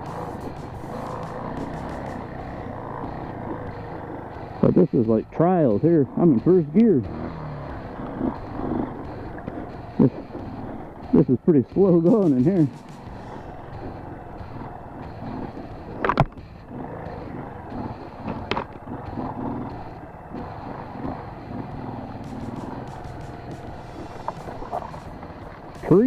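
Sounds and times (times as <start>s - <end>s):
motorcycle engine at low revs: 0.0s - 26.0s.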